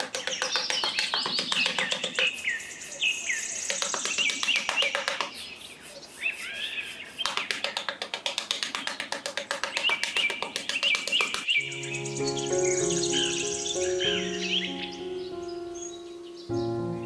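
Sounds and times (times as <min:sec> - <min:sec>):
sharp taps: 0:00.0 - 0:11.5
small birds chirping: 0:00.0 - 0:16.7.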